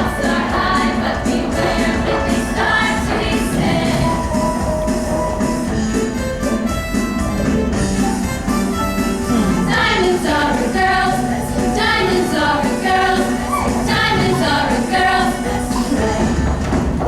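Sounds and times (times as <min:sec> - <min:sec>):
choir singing: 0:00.0 - 0:05.7, 0:09.3 - 0:16.7
instrumental backing music: 0:00.0 - 0:17.0.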